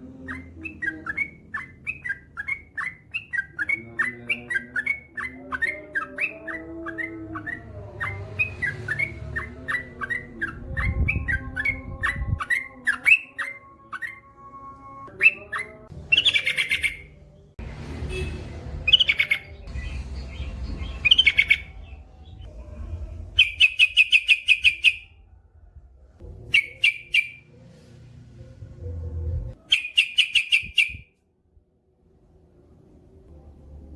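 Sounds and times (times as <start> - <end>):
bird chirping and trilling: 0.0 - 14.5, 15.1 - 17.4, 18.1 - 22.5, 23.3 - 25.2, 26.4 - 27.5, 29.5 - 31.1
low background rumble: 16.9 - 24.0, 24.9 - 26.5, 27.5 - 29.6.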